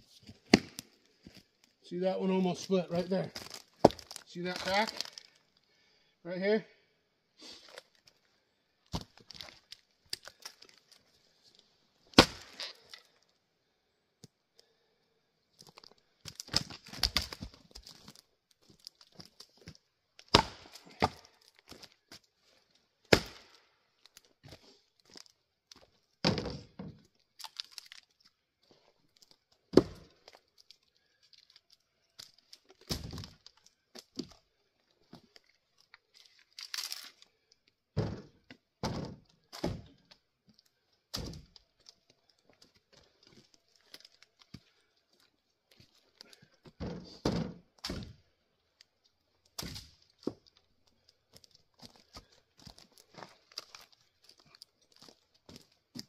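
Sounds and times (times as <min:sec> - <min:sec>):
axe striking firewood: 0:00.4 - 0:00.9, 0:03.4 - 0:04.2, 0:12.1 - 0:12.8, 0:20.2 - 0:21.8, 0:23.1 - 0:23.7, 0:29.7 - 0:30.1, 0:32.8 - 0:33.4, 0:41.1 - 0:41.5, 0:46.8 - 0:48.2, 0:49.6 - 0:50.4
wood cracking apart: 0:02.6 - 0:05.6, 0:08.9 - 0:11.1, 0:12.1 - 0:13.3, 0:15.6 - 0:22.2, 0:23.0 - 0:34.4, 0:35.3 - 0:37.5, 0:49.4 - 0:56.0.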